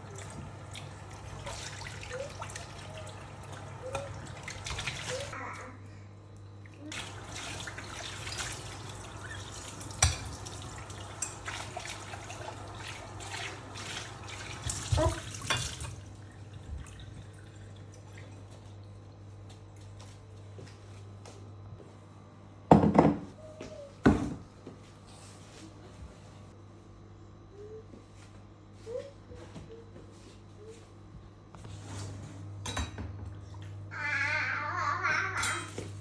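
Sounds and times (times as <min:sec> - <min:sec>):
water running into sink: 0:00.0 - 0:05.3, 0:06.6 - 0:18.7.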